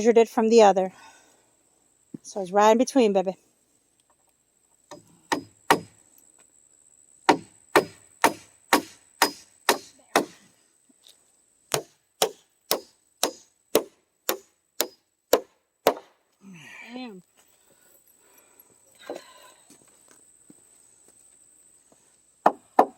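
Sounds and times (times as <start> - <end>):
hammer driving nails into wood: 11.7 - 16.1.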